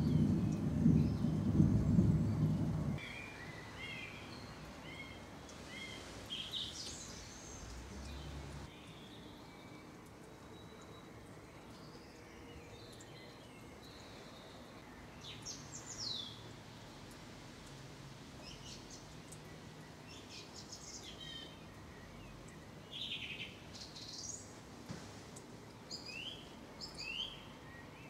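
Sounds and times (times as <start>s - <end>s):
background hiss: 0.0s - 10.4s, 11.1s - 28.0s
blackbirds singing: 10.6s - 16.5s, 18.4s - 24.5s, 25.9s - 28.0s.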